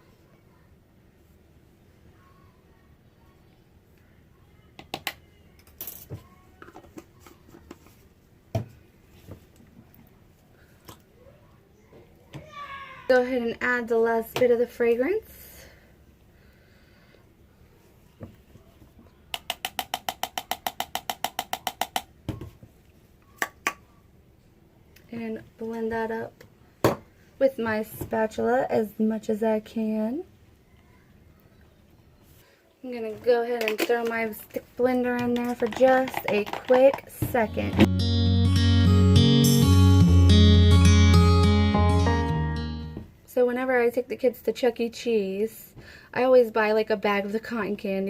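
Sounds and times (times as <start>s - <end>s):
containers and utensils clicking: 33.6s - 37.6s.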